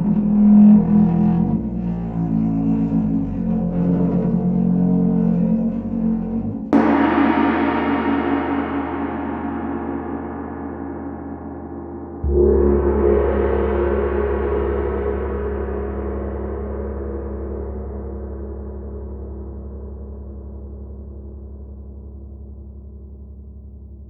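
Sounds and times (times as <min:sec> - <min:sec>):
gong struck and ringing: 0:06.7 - 0:19.8.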